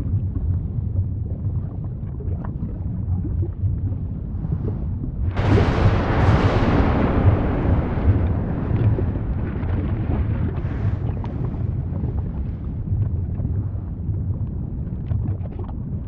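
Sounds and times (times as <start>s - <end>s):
deep rumble: 0.0s - 16.0s
sharp cracks: 5.3s - 11.8s
volcanic blast with hissing roar: 5.3s - 12.0s.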